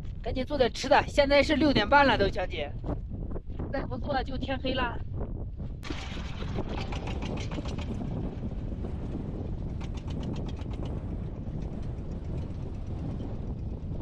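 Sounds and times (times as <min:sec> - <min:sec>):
engine low rumble: 0:05.4 - 0:14.0.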